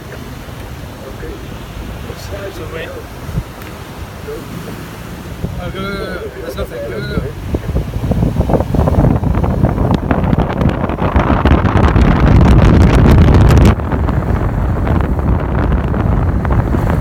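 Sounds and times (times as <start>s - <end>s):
vehicle driving on sand: 0.0s - 17.0s
wind buffeting microphone: 0.0s - 17.0s.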